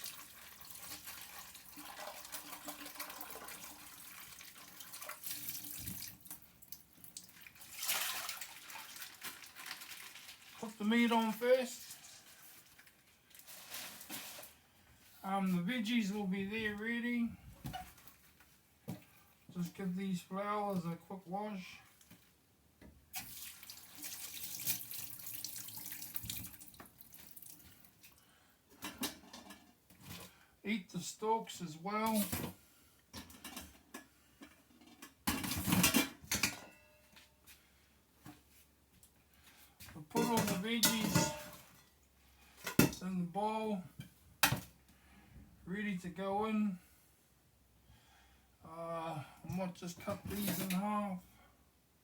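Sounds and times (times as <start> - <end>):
tap water running into sink: 0.0 - 6.2, 23.2 - 27.6
water splashing: 7.2 - 10.7.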